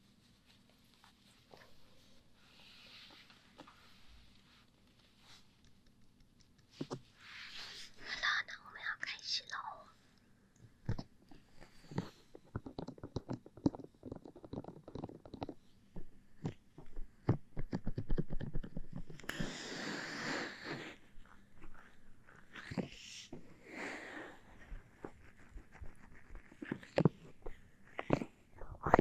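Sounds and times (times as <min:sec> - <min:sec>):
breathy whisper-like hisses: 0:07.2 - 0:10.1, 0:19.3 - 0:21.0, 0:22.5 - 0:24.6.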